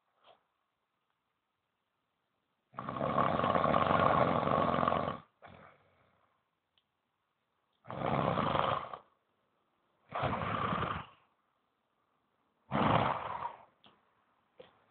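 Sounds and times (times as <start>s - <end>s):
man snoring: 2.8s - 5.6s, 7.9s - 9.0s.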